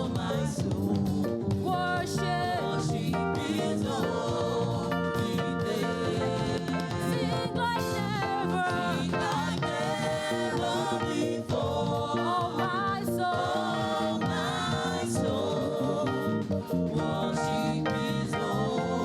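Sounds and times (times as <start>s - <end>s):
gospel choir singing: 0.0s - 19.0s
instrumental backing: 0.0s - 19.0s.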